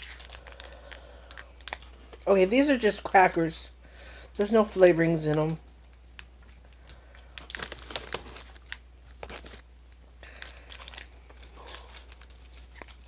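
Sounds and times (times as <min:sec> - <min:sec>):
plastic wrapper crinkling: 0:00.0 - 0:03.4, 0:06.2 - 0:13.0.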